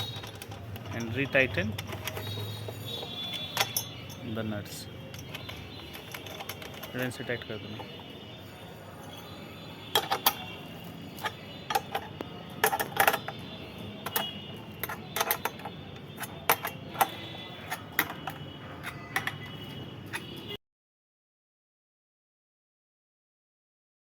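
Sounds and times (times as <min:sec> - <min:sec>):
wrench clicking on bolts: 0:00.0 - 0:04.3, 0:05.1 - 0:07.4, 0:11.2 - 0:13.4, 0:14.0 - 0:19.5.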